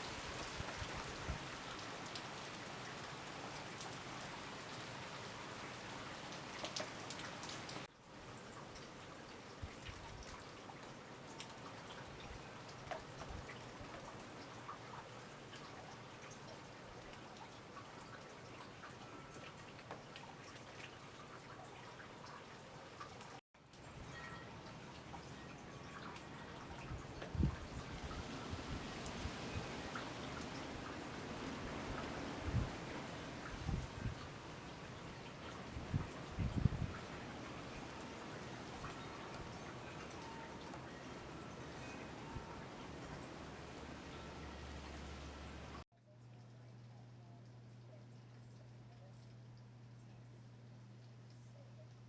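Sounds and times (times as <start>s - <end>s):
rain falling: 0.0s - 45.8s
raindrops ticking close by: 0.0s - 52.0s.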